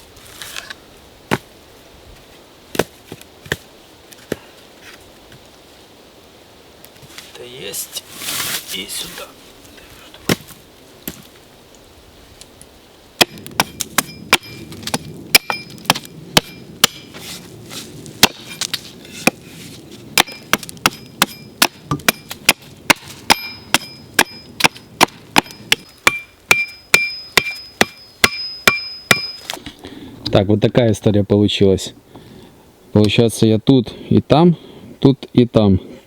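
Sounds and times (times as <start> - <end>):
axe knocking wooden wedges: 13.2 - 17.3, 18.2 - 19.4, 20.2 - 29.6.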